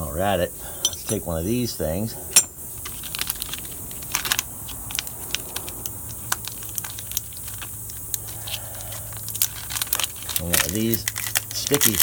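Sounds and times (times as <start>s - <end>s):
low steady hum: 0.0s - 12.0s
crinkling handling noises: 0.9s - 12.0s.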